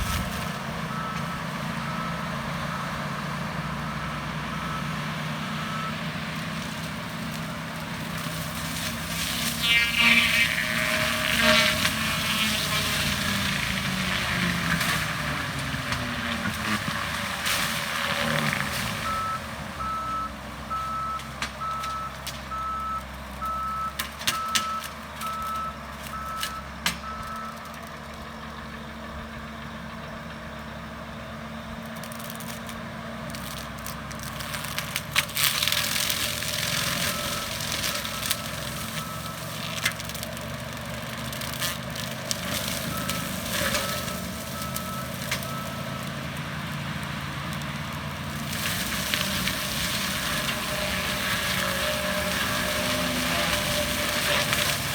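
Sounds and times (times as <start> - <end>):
diesel engine running: 0.0 - 54.9
reversing alarm beeping: 0.9 - 3.0, 3.8 - 6.1, 19.0 - 27.6, 37.0 - 39.5, 42.8 - 46.2.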